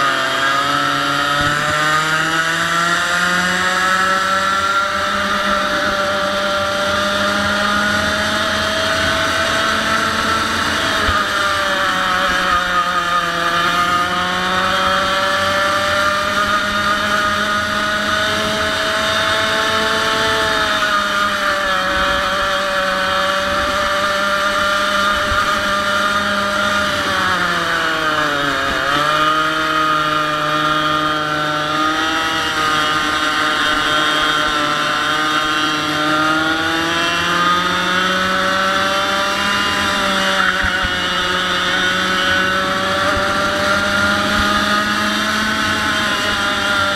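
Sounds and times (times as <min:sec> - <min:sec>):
kart engine revving: 0:00.0 - 0:46.9.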